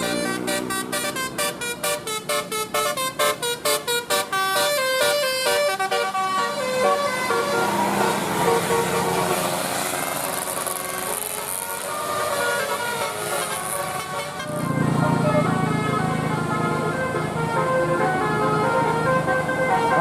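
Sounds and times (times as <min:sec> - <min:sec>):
musical bus horn tune: 0:00.0 - 0:20.0.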